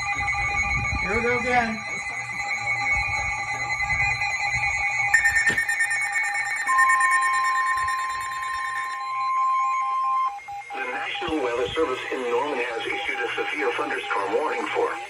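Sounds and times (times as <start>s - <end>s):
strong steady warning tone: 0.0s - 15.0s
weather radio alarm tones: 0.0s - 15.0s.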